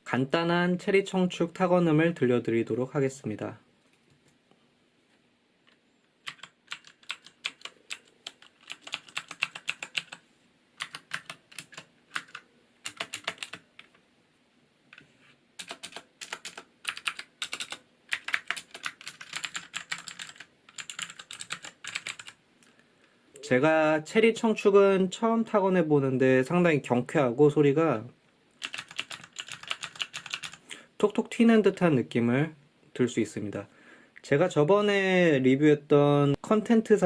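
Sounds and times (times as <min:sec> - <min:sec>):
mechanical keyboard typing: 0:06.2 - 0:10.2, 0:10.8 - 0:14.0, 0:15.6 - 0:22.4, 0:28.6 - 0:30.6.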